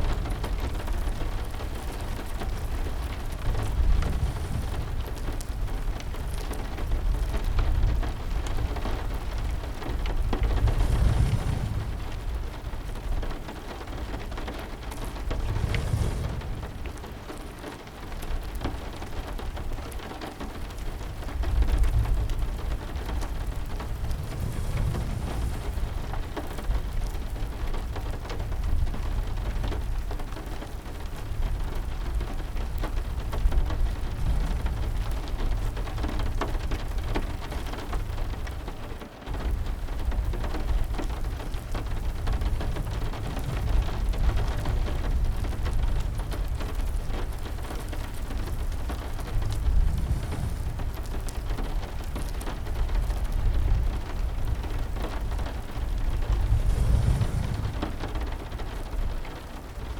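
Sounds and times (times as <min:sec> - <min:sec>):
heavy rain: 0:00.0 - 0:59.9
low rolling thunder: 0:00.0 - 0:59.9.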